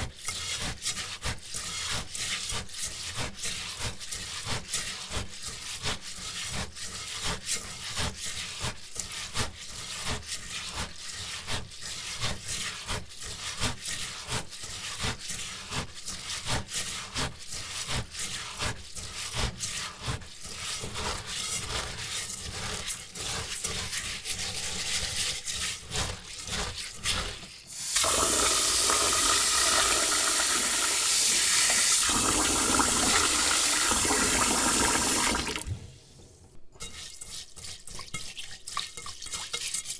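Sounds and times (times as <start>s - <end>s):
rice swished in bowl by hand: 10.0s - 39.9s
tap water running: 27.7s - 36.0s.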